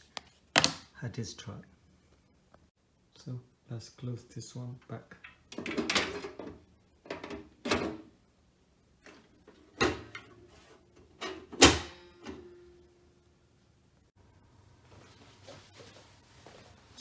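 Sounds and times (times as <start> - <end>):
metal cover clunking: 11.0 - 12.5.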